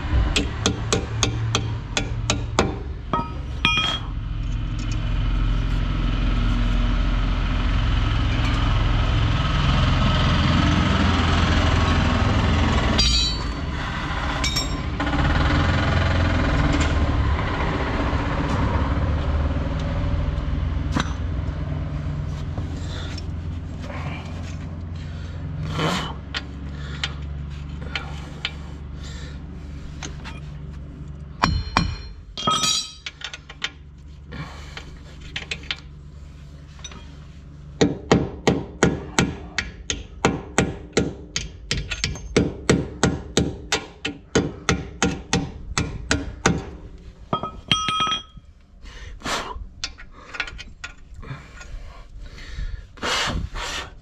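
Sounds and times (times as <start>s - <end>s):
low engine hum: 0.0s - 40.8s
sharp metallic knocks and clicks: 0.1s - 5.0s, 31.4s - 33.8s, 37.8s - 46.8s.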